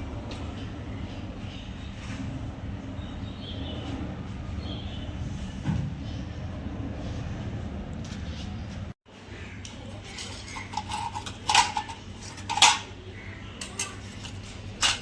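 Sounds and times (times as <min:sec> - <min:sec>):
small metal parts clinking: 0:10.1 - 0:13.0, 0:13.6 - 0:15.0.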